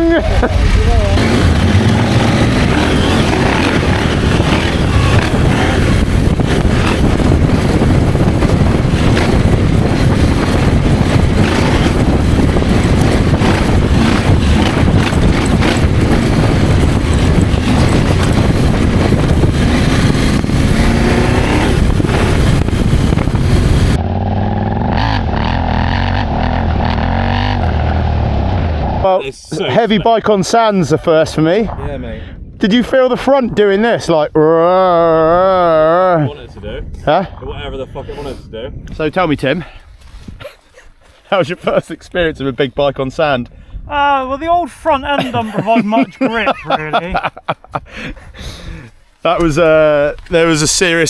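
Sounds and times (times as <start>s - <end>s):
loud dense rushing noise: 0.0s - 24.0s
motorcycle engine off-road: 0.0s - 29.8s, 49.2s - 51.0s.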